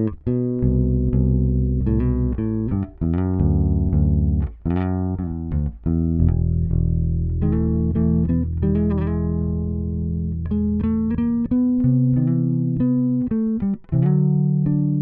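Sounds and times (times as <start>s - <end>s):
bass guitar groove: 0.0s - 15.0s.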